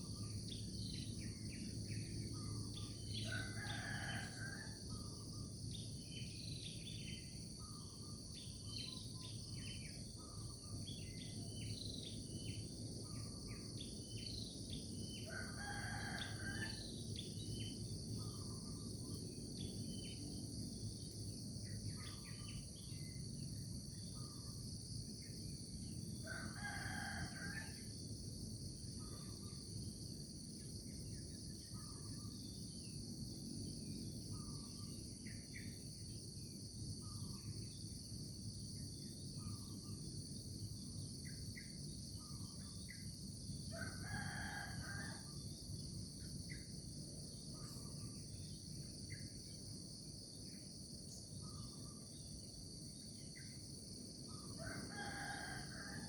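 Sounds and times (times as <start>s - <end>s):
insect chorus: 0.0s - 56.0s
rooster crowing: 3.3s - 4.8s, 15.3s - 16.8s, 26.3s - 27.8s, 43.7s - 45.4s, 54.6s - 56.0s.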